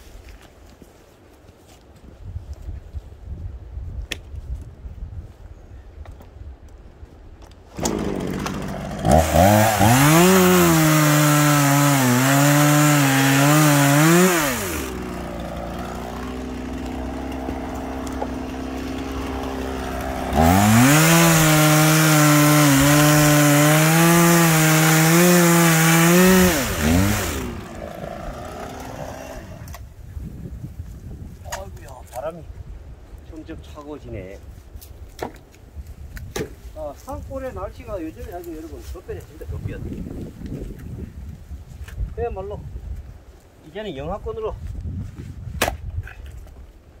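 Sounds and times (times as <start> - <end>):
chainsaw cutting wood: 7.7 - 29.8.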